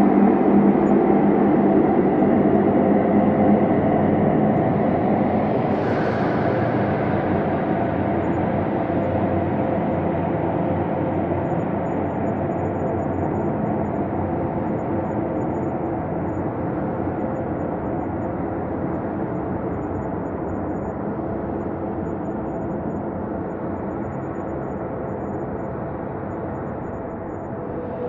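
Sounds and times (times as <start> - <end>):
faint sustained tones: 26.0 - 28.0
synthesized drone: 26.6 - 28.0.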